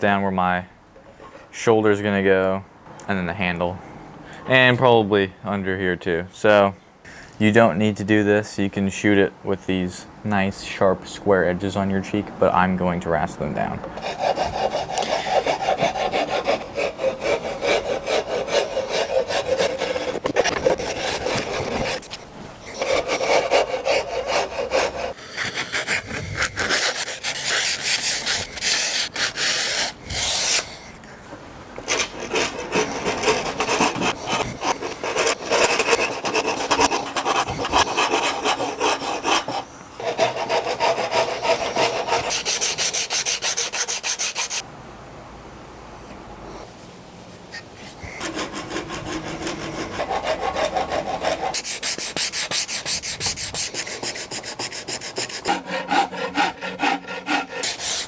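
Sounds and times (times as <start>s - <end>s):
wood rasp scraping wood: 14.0s - 31.0s, 31.8s - 44.6s, 47.4s - 58.0s.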